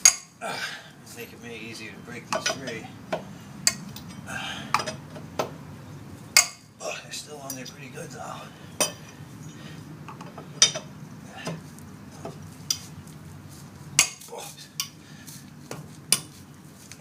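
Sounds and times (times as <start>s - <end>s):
metal tool clanking on bolts: 2.2s - 2.9s, 3.6s - 5.0s, 8.8s - 9.2s, 10.2s - 10.9s.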